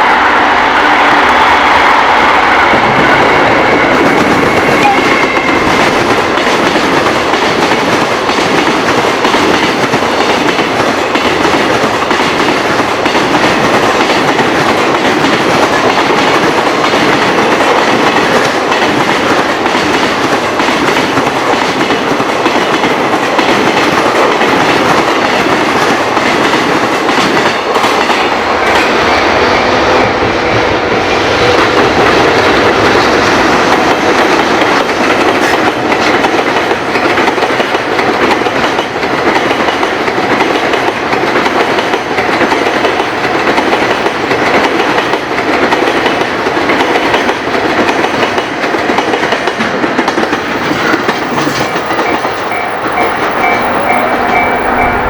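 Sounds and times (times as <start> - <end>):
freight train wheels clattering: 2.5 - 55.0.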